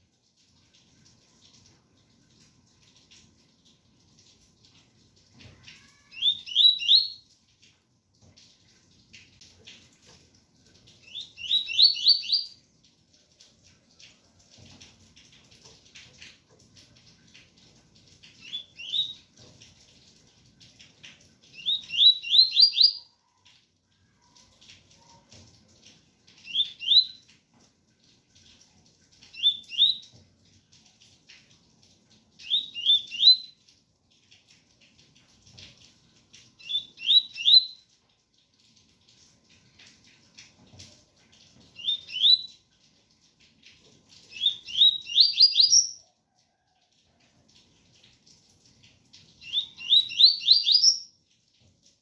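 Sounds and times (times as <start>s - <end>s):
bird singing whistled notes: 6.2s - 7.2s, 11.1s - 12.6s, 18.4s - 19.2s, 21.6s - 23.0s, 26.5s - 27.2s, 29.4s - 30.0s, 32.4s - 33.5s, 36.6s - 37.8s, 41.8s - 42.5s, 44.4s - 46.0s, 49.4s - 51.1s.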